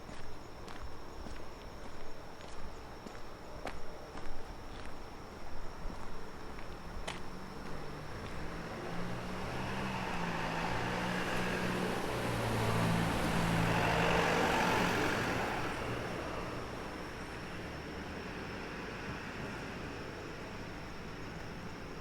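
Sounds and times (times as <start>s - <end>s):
vehicle passing on street: 6.7s - 22.0s.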